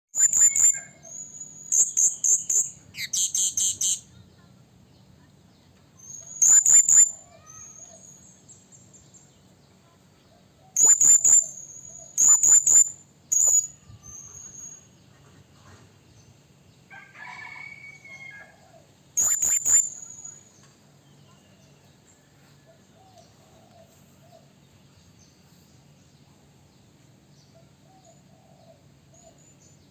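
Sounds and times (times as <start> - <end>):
parrot high thin calls: 0.2 - 4.0, 19.2 - 20.4.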